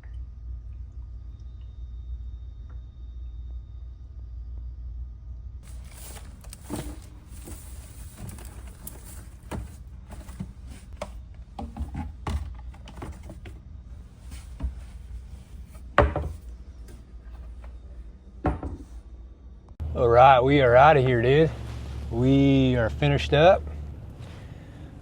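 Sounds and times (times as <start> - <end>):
objects clicking and knocking: 5.6 - 13.6.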